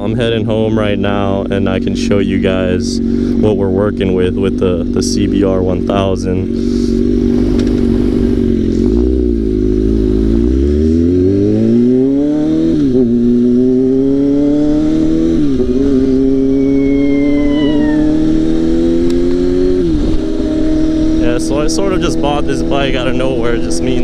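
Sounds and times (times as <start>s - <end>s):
motorcycle engine accelerating: 0.0s - 24.0s.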